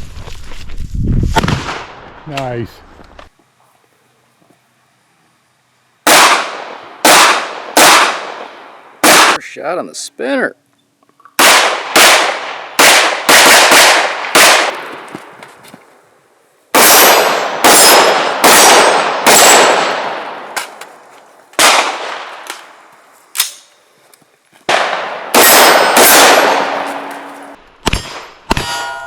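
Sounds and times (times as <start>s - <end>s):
handgun shots: 23.4s - 23.7s, 24.7s - 28.8s
steel target ringing: 25.3s - 29.0s.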